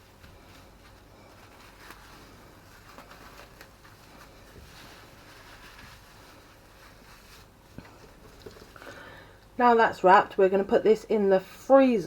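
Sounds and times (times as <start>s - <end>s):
cling film rustling: 0.0s - 9.5s.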